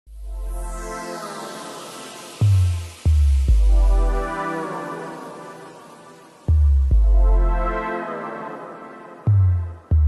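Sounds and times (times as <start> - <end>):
sustained synthesizer chord: 3.6 - 10.0.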